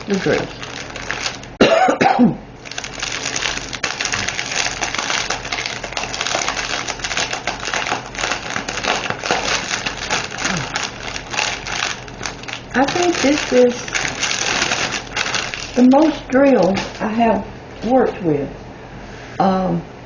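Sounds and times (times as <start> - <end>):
plastic bags crinkling: 0.0 - 1.6, 2.6 - 17.4
tiny beads rattling: 2.6 - 17.1.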